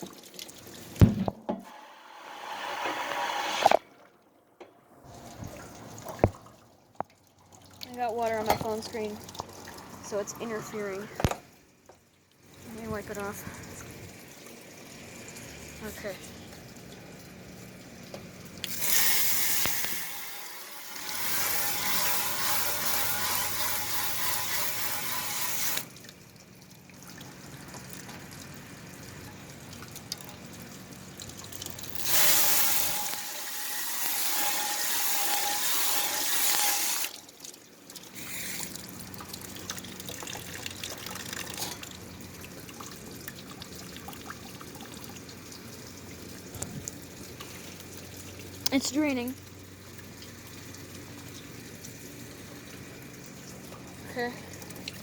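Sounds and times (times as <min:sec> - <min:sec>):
garden hose spraying water: 0:00.0 - 0:03.9, 0:07.8 - 0:11.2, 0:12.6 - 0:13.7, 0:18.4 - 0:26.0, 0:27.4 - 0:43.6, 0:47.3 - 0:52.9.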